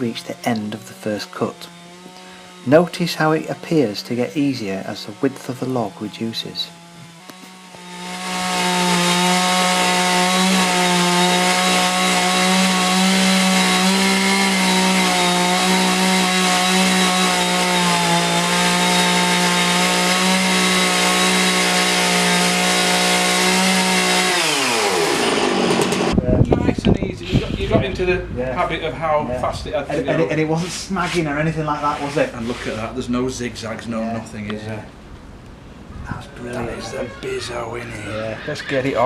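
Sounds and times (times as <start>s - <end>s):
chainsaw cutting through log: 0.0s - 26.2s.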